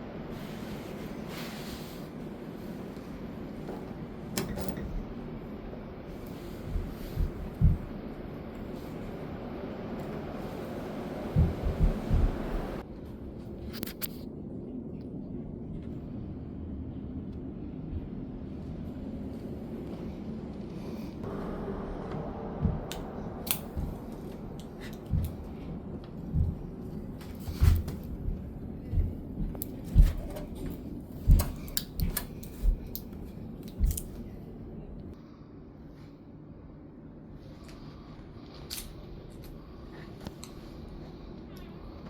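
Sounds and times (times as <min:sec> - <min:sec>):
steady low hum: 0:00.0 - 0:42.0
dull low thumps: 0:06.6 - 0:08.3, 0:11.2 - 0:12.8, 0:21.9 - 0:33.0.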